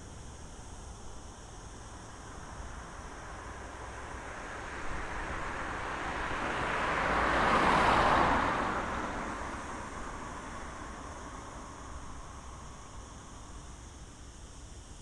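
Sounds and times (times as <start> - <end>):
low rumble of traffic: 0.1 - 14.8
vehicle driving past: 3.6 - 12.5.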